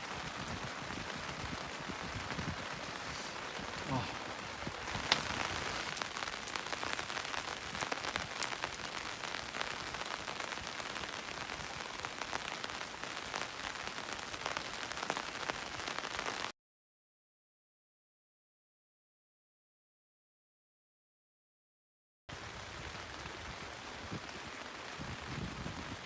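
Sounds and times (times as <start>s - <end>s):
rain pattering: 0.0s - 16.5s, 22.3s - 26.0s.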